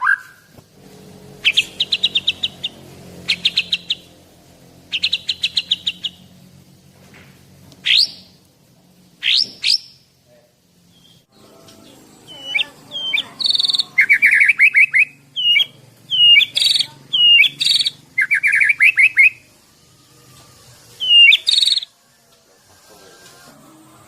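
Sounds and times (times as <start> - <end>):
bird singing varied whistles: 0.0 - 0.5, 4.9 - 6.2, 7.8 - 8.4, 9.2 - 10.0, 12.3 - 19.5, 21.0 - 21.9.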